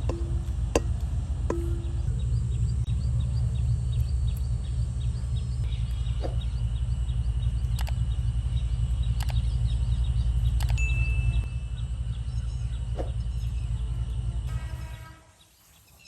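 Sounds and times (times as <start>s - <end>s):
steady low rumble: 0.0s - 15.0s
small birds chirping: 0.0s - 16.0s
light clicks: 7.6s - 8.3s, 9.1s - 11.6s.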